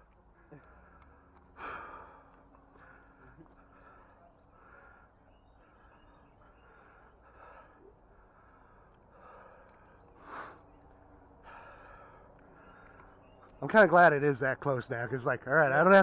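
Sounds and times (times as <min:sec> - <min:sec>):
person breathing hard: 0:00.5 - 0:10.7, 0:11.4 - 0:13.0.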